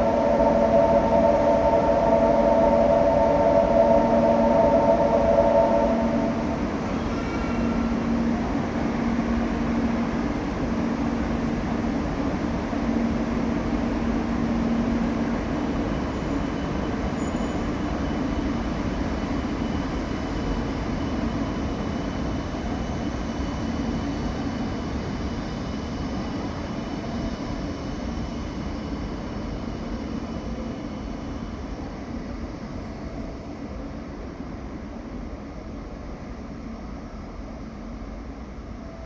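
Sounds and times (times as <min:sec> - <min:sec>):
low hum: 0:00.0 - 0:07.0
train rushing on rails: 0:00.0 - 0:39.0.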